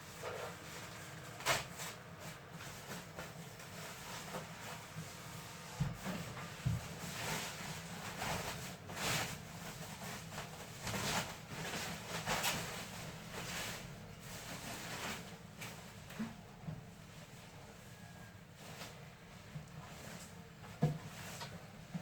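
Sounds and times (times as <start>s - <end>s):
packaging rustling and scraping: 0.1s - 16.4s.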